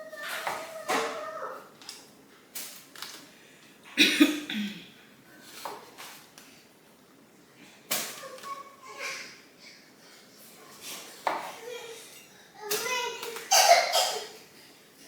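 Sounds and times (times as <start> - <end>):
person coughing: 4.0 - 5.0, 13.5 - 14.4.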